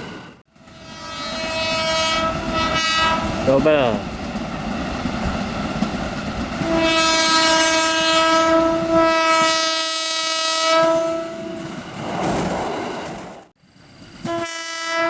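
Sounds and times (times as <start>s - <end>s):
train rumbling past: 0.0s - 9.9s, 10.5s - 15.0s
train horn blast: 0.5s - 4.0s, 6.6s - 11.7s, 14.2s - 15.0s.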